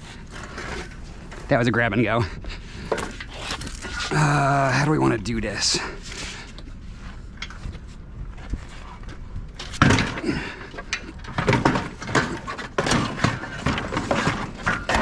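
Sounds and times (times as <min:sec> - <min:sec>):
heavy items knocking and scraping: 0:07.4 - 0:15.0.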